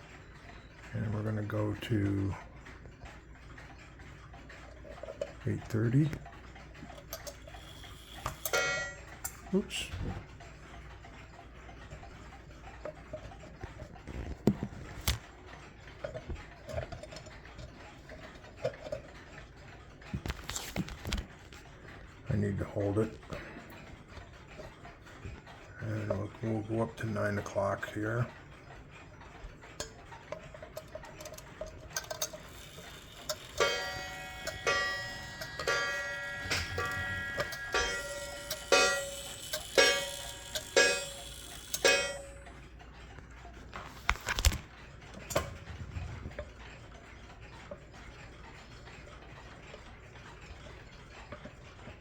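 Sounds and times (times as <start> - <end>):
clock movement clicking: 0.0 - 52.0
clock clicks and knocks: 3.6 - 9.5, 29.7 - 42.6.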